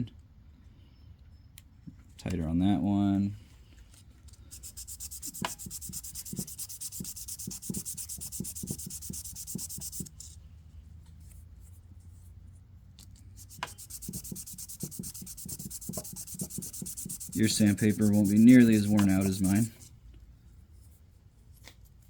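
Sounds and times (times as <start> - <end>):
plastic rubbing on sandpaper: 4.5 - 10.3, 13.3 - 19.9.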